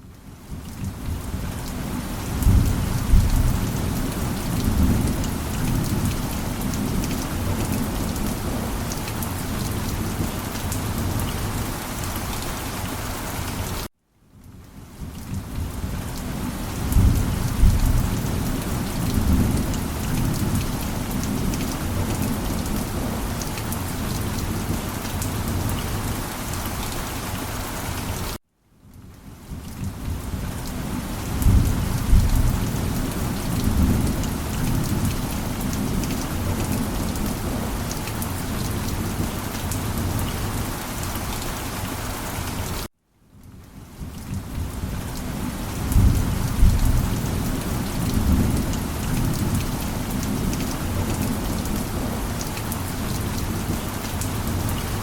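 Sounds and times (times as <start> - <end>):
heavy rain: 0.0 - 55.0
thunder rumbling: 2.3 - 8.8, 16.7 - 23.4, 45.8 - 52.2.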